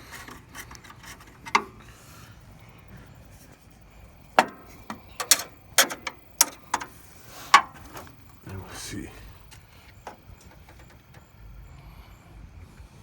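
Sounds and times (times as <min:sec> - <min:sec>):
metallic clicks from hand tools: 0:04.5 - 0:06.9.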